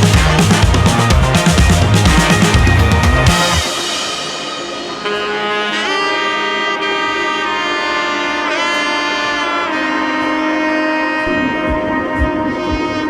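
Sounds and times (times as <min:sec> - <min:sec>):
heavy drums: 0:00.0 - 0:06.8
background music with horns: 0:00.0 - 0:13.0.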